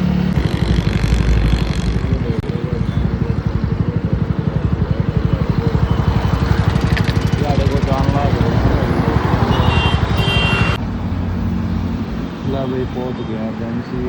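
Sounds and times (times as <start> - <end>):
motorcycle engine running: 0.0 - 10.8.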